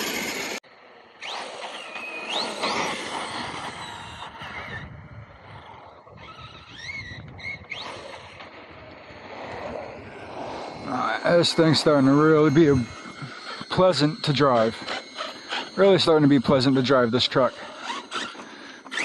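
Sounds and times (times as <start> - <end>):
electric motor whine: 0.0 - 19.0
steady rushing noise: 7.9 - 19.0.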